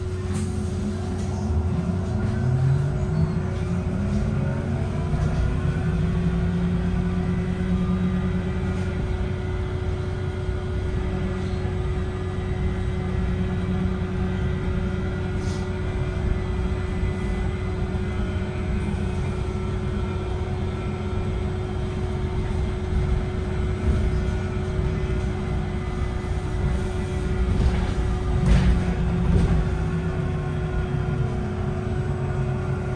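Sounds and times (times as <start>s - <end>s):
bus drivetrain whining: 0.0s - 32.9s.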